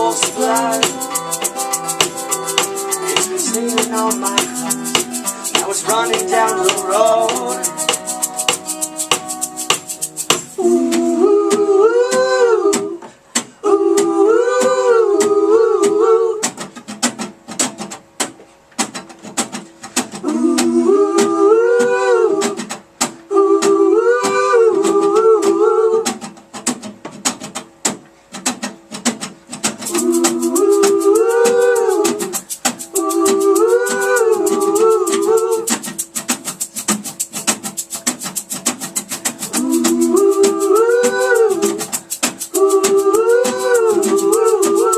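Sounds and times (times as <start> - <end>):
wordless melody phrase: 0.0 - 10.6
fast shaker rhythm: 0.0 - 12.3, 18.8 - 44.9.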